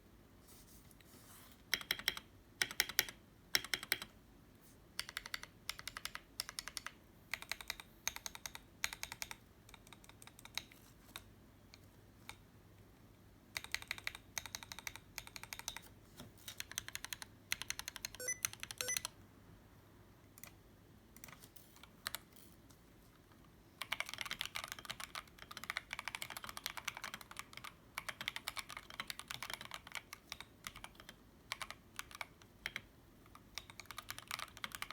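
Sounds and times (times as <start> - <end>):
mechanical keyboard typing: 1.7 - 4.2, 5.0 - 11.3, 13.5 - 19.1, 23.8 - 34.9.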